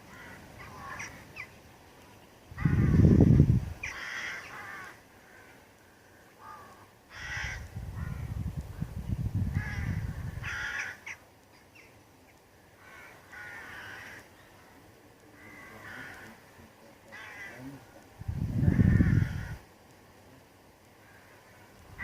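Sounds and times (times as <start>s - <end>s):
bird rasping calls: 0.1s - 1.6s, 3.8s - 5.6s, 9.6s - 11.9s, 12.8s - 14.8s.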